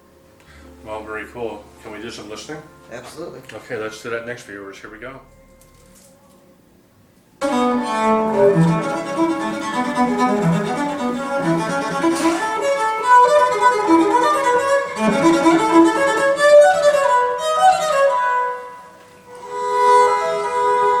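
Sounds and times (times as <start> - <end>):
classical string music with violin: 7.4 - 21.0.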